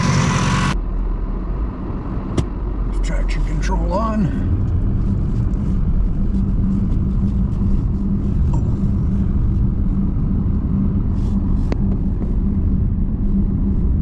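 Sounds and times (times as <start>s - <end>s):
truck engine running under load: 0.0s - 2.8s.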